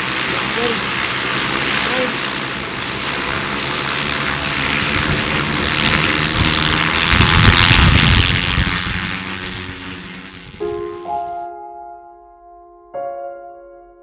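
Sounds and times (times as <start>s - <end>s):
aircraft propellers whirring: 0.0s - 11.1s.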